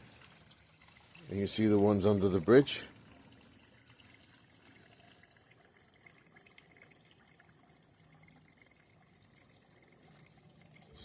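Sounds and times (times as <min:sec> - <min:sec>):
trickle of running water: 0:00.0 - 0:11.0.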